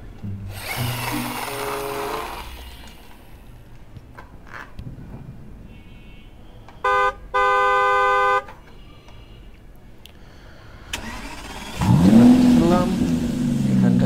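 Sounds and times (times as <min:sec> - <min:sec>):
car horn honking: 0:05.6 - 0:09.5.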